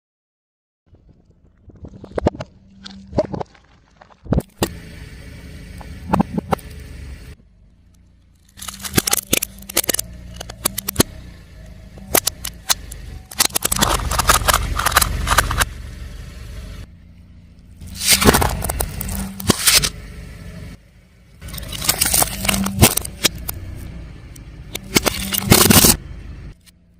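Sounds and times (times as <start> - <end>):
car running rumble: 0.9 - 26.9
tyre crushing crunchy objects: 1.5 - 4.8, 8.4 - 11.2, 12.0 - 15.7, 17.8 - 20.0, 21.4 - 23.8, 24.7 - 26.0.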